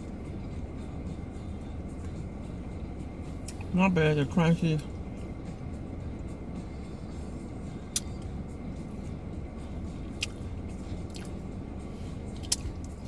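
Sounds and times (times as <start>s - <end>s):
low hum inside a car: 0.0s - 13.0s
chewing crunchy fried chicken: 11.1s - 11.4s, 12.4s - 13.0s.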